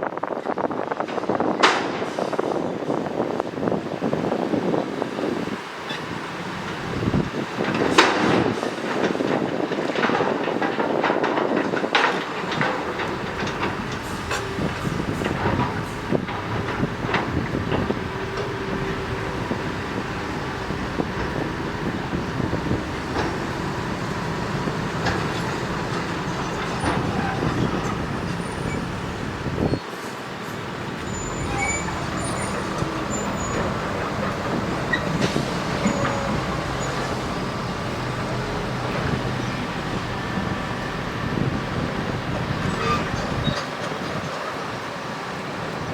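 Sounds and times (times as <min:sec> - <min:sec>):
diesel engine running: 0:12.4 - 0:45.9.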